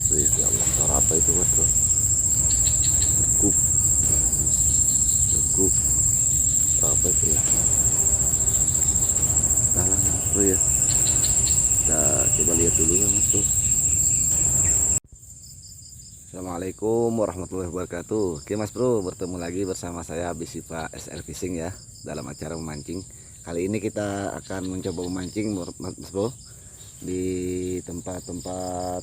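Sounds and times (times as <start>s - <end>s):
low rumble: 0.0s - 15.0s
high-pitched insect trill: 0.0s - 29.0s.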